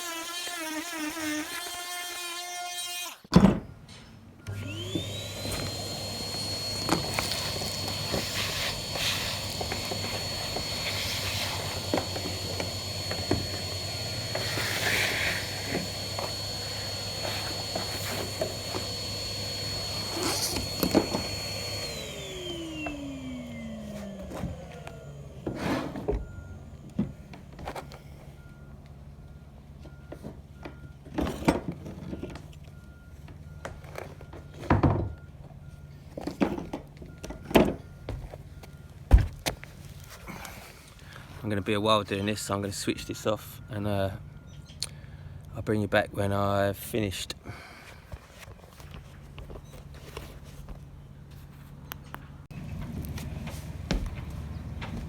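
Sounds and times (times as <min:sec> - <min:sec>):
oscillating multi-tool whining: 0:04.5 - 0:25.4.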